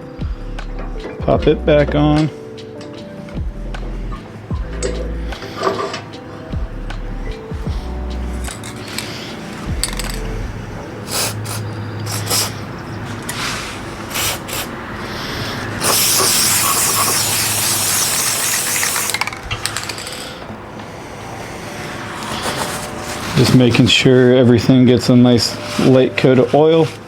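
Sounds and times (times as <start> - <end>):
aerosol can spraying hiss: 11.1 - 12.6, 13.4 - 14.8, 15.8 - 19.3.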